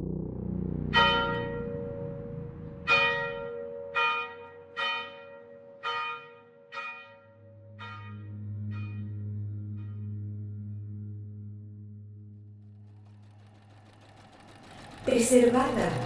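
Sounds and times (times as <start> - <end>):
low steady drone: 0.0 - 6.2, 7.4 - 16.0
bell ringing: 2.9 - 8.2.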